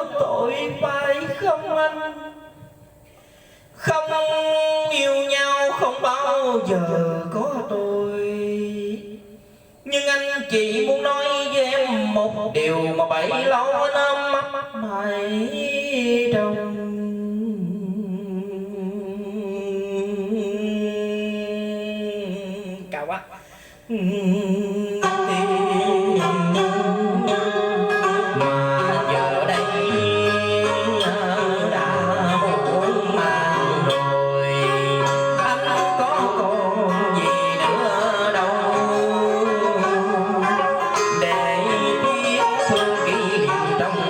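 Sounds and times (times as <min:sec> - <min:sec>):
plucked string instruments: 0:00.0 - 0:08.4, 0:24.8 - 0:44.0
person singing long note: 0:23.9 - 0:44.0.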